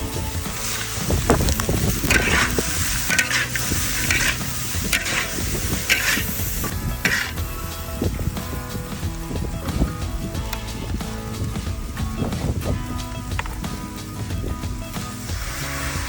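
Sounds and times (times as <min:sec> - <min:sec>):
gizzards sizzling in hot oil: 0:00.0 - 0:16.0
stirring scrape in pan: 0:00.5 - 0:07.4.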